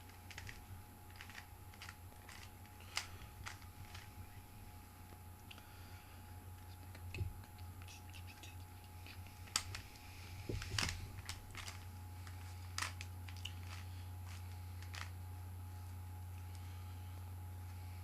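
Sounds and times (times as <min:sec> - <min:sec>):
steady low hum: 0:00.0 - 0:18.0
puzzle cube clicking and clacking: 0:00.2 - 0:04.1.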